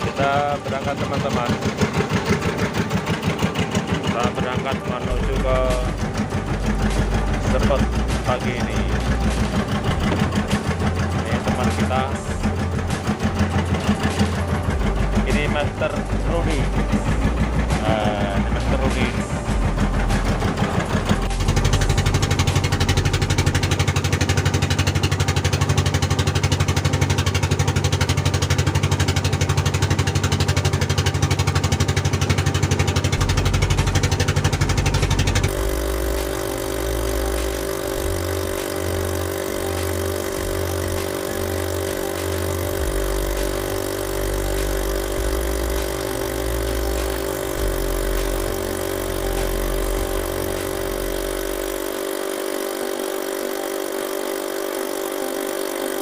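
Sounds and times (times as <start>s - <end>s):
boat engine throbbing: 0.0s - 56.0s.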